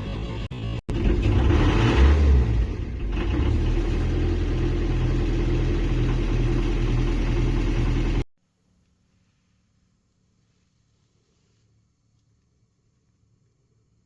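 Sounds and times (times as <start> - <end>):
engine rumbling: 0.0 - 8.3.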